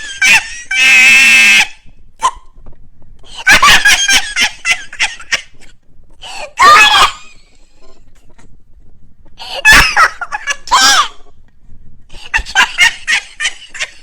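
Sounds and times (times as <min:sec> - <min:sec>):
person laughing and shrieking: 0:00.0 - 0:02.4, 0:03.3 - 0:05.6, 0:06.3 - 0:07.9, 0:09.4 - 0:11.3, 0:12.1 - 0:14.0.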